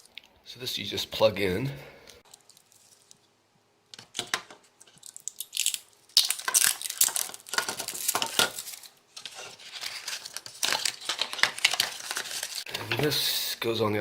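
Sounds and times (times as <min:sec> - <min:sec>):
packaging crinkling: 0:02.3 - 0:03.2, 0:04.1 - 0:12.7.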